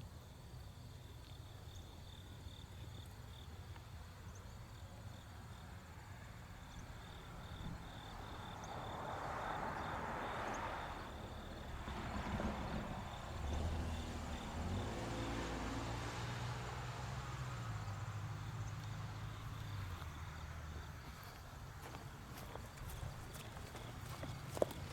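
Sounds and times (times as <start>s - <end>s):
crickets chirping: 0.0s - 24.9s
vehicle passing: 6.4s - 24.9s
low engine hum: 6.8s - 24.9s.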